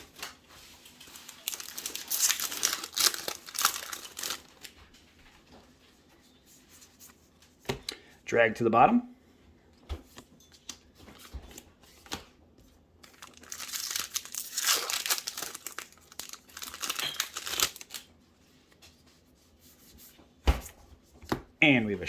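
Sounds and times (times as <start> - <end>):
foil wrapper crinkling and tearing: 0.0 - 4.8, 13.0 - 18.1.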